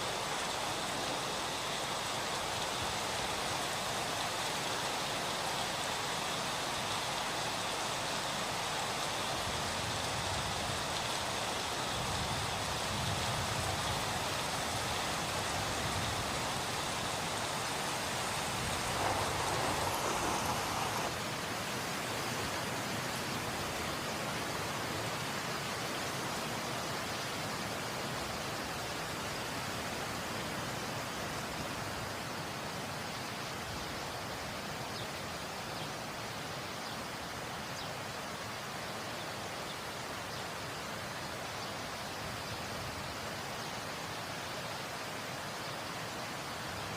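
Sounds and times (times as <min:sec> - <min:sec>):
waterfall roaring: 0:00.0 - 0:32.7.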